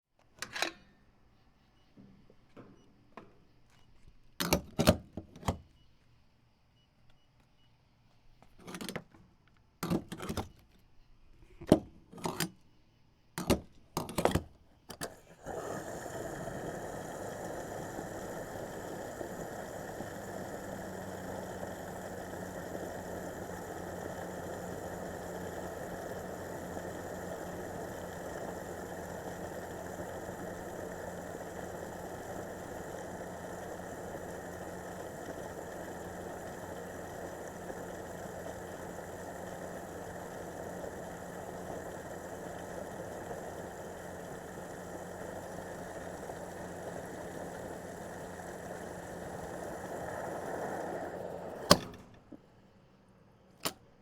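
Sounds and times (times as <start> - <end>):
gas pump clicks and clunks: 0.2 - 0.9, 4.4 - 5.7, 8.5 - 9.1, 9.8 - 10.6, 11.6 - 12.6, 13.4 - 15.8, 45.6 - 52.5, 53.5 - 54.0
fuel pump whirring: 14.9 - 52.6.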